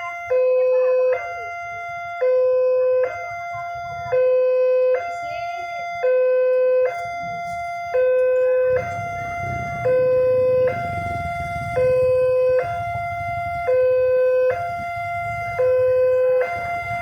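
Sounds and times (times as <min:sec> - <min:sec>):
level crossing warning siren: 0:00.0 - 0:17.0.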